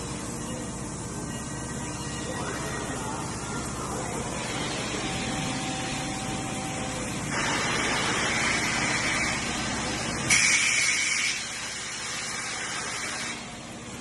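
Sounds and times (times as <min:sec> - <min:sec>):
machinery hum: 0:00.0 - 0:14.0
air blow-off hiss: 0:07.2 - 0:13.5.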